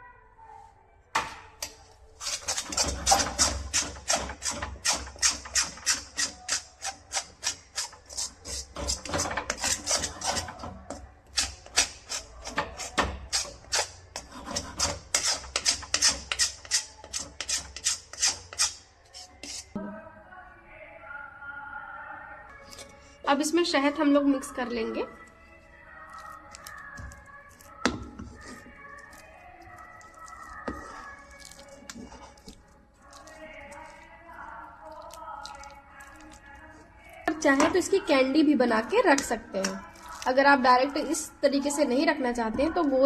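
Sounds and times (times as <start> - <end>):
spoon scraping sticky mixture in pan: 1.6 - 19.7, 26.1 - 41.1.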